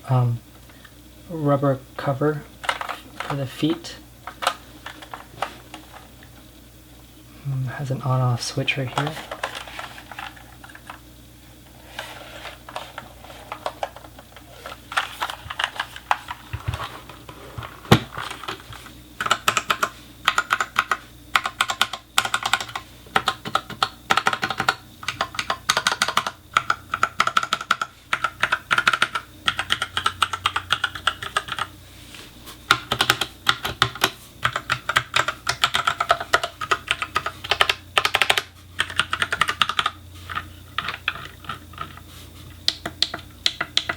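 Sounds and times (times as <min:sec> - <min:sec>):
mechanical keyboard typing: 0:02.6 - 0:03.4, 0:19.2 - 0:31.7, 0:32.7 - 0:42.0, 0:42.7 - 0:43.9.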